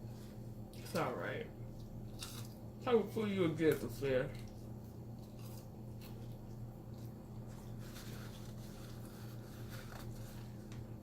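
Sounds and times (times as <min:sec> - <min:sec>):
steady low hum: 0:00.0 - 0:11.0
close-up chewing: 0:01.7 - 0:02.7, 0:03.7 - 0:10.8.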